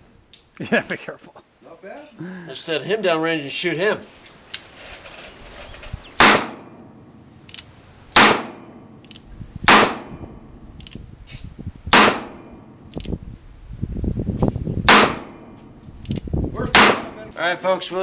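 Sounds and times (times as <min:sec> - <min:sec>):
handgun shots: 0:06.2 - 0:06.8, 0:08.2 - 0:10.2, 0:11.9 - 0:12.6, 0:14.9 - 0:15.5, 0:16.7 - 0:17.1.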